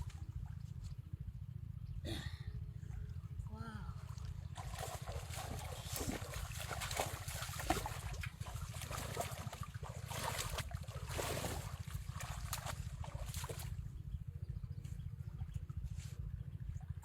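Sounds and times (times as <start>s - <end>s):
floodwater sloshing and splashing: 0.0s - 1.1s, 2.8s - 14.2s
low pulsing rumble: 0.0s - 17.0s.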